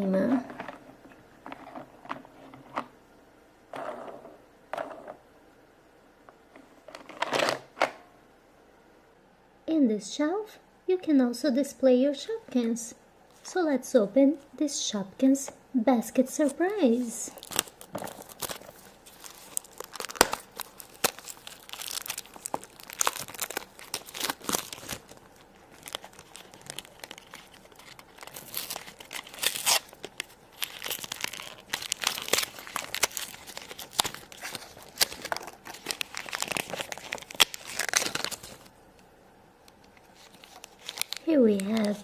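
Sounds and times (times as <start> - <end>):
plastic packaging crinkling and tearing: 16.4 - 38.7, 39.9 - 42.0.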